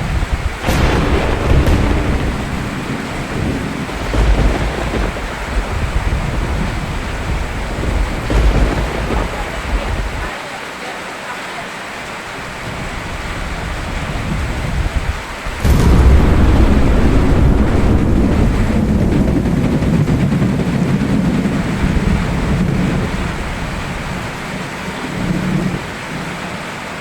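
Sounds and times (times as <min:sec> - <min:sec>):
steady rain: 0:00.0 - 0:27.0
sharp thunderclap: 0:00.6 - 0:10.3, 0:15.4 - 0:24.2
thunder rumbling: 0:00.6 - 0:10.3, 0:14.2 - 0:24.4.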